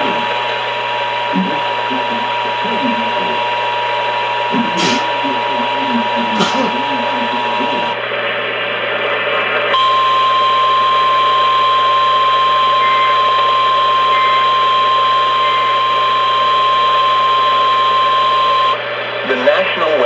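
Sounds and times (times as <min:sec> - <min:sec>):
radio hiss: 0:04.8 - 0:05.4.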